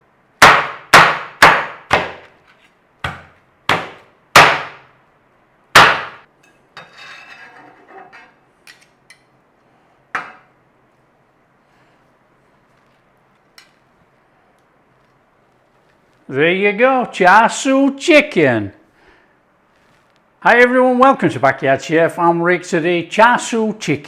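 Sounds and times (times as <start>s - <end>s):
heavy chopping on wooden board: 0.4s - 2.4s, 3.0s - 4.8s, 5.8s - 6.2s.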